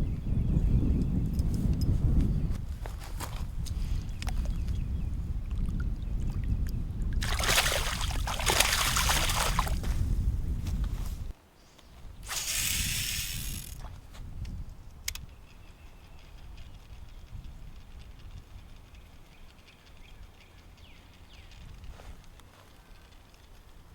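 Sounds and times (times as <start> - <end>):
wind buffeting microphone: 0.0 - 22.4
bursts of rushing hiss: 12.3 - 13.8.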